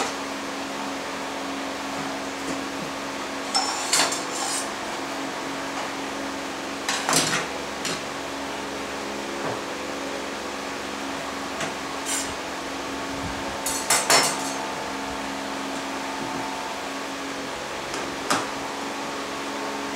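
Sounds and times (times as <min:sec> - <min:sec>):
low machine hum: 0:00.0 - 0:19.9
metal tools clattering on worktop: 0:03.5 - 0:04.7, 0:13.7 - 0:14.6.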